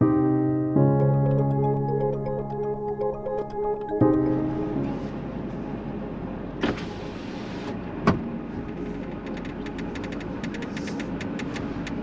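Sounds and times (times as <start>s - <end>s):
vehicle running noise: 4.2s - 12.0s.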